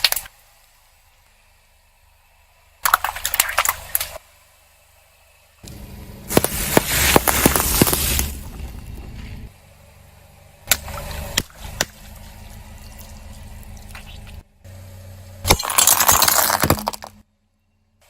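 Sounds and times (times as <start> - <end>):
brittle things cracking and breaking: 15.5 - 17.2.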